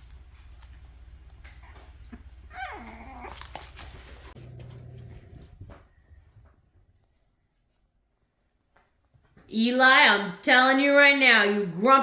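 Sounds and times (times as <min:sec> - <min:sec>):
dogs scuffling: 0:00.0 - 0:09.5
dog whining: 0:01.6 - 0:03.8
dog growling: 0:02.5 - 0:03.6, 0:04.2 - 0:05.6.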